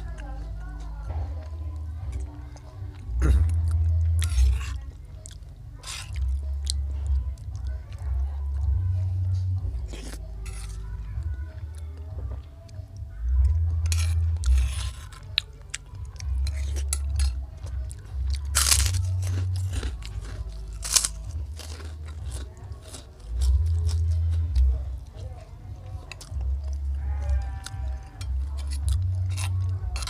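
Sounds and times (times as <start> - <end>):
crunchy bites and chewing: 3.2 - 7.0, 13.4 - 25.1, 25.9 - 30.0.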